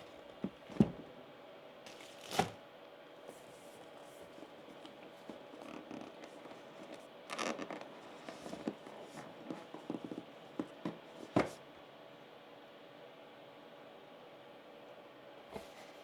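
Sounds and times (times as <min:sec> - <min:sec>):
packaging rustling and scraping: 0:01.9 - 0:02.6, 0:03.3 - 0:11.6
packaging tearing: 0:01.9 - 0:02.6.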